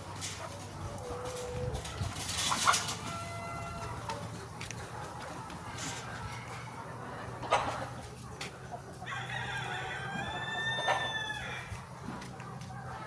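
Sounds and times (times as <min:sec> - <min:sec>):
rooster crowing: 0:09.1 - 0:11.7.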